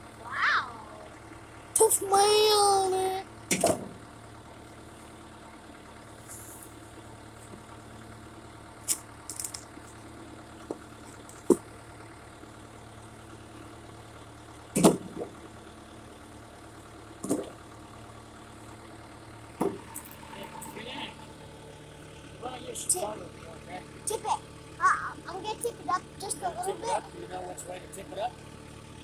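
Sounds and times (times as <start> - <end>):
backhoe engine idling: 0.0 - 29.0.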